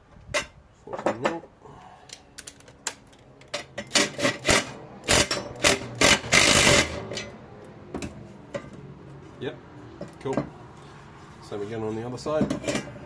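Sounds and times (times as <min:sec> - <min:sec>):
ratchet wrench clicking: 0:03.9 - 0:07.2.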